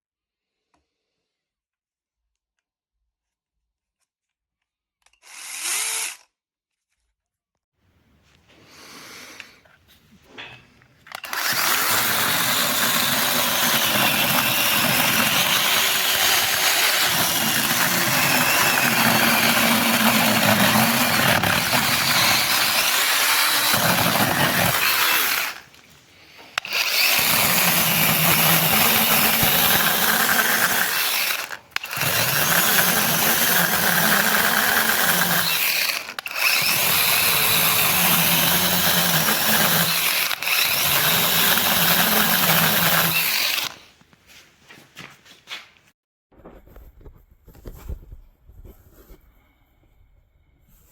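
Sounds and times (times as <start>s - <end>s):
electric chainsaw running: 11.1s - 43.8s.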